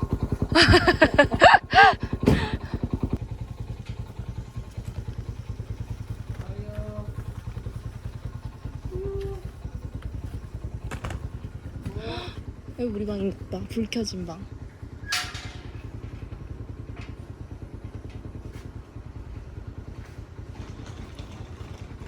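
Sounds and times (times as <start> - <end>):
motorcycle engine running: 0.0 - 22.0.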